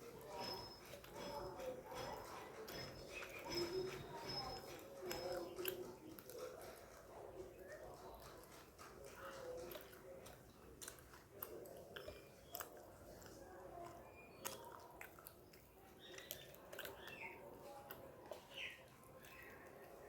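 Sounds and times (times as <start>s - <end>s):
person chewing food: 0.0s - 20.0s
mouth clicks and smacks: 4.4s - 20.0s.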